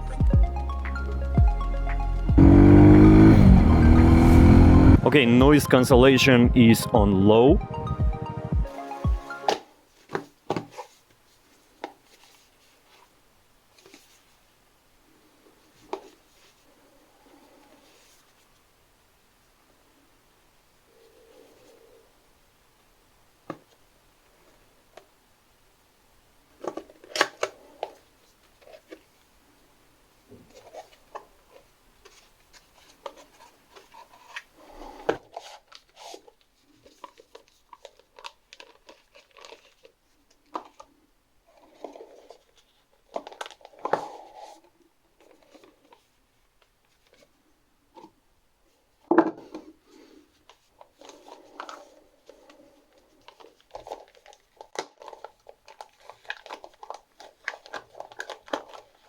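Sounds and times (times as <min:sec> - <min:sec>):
packaging crinkling and tearing: 0:35.3 - 0:40.9, 0:41.5 - 0:44.2, 0:50.7 - 0:59.0.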